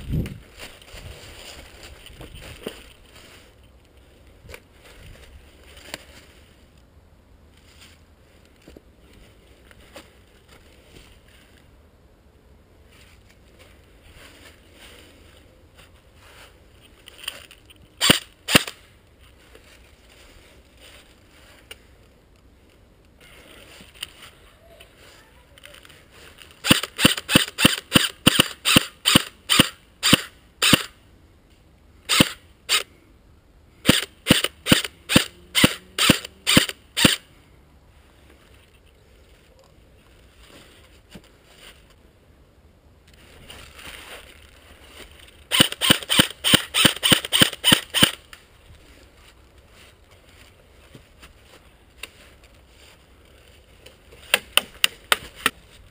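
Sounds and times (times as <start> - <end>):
airsoft rifle shots: 18.0 - 18.8, 26.6 - 31.0, 32.1 - 32.4, 33.8 - 37.2, 45.5 - 48.2.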